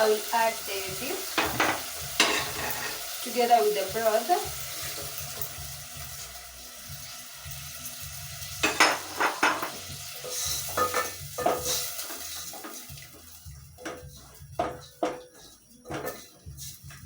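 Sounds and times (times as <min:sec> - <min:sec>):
broth sizzling in a pot: 0:00.0 - 0:17.0
spoon scraping and knocking pot: 0:01.3 - 0:03.0, 0:08.6 - 0:12.9, 0:13.8 - 0:17.0.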